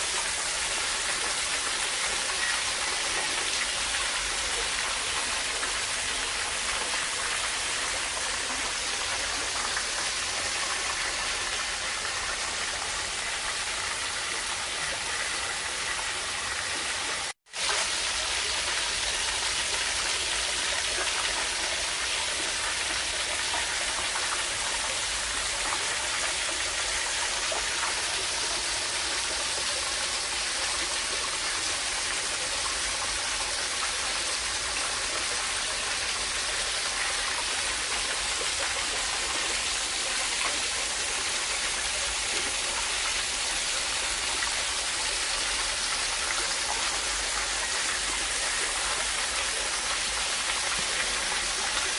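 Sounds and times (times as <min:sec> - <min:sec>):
water rushing: 0:00.0 - 0:51.9.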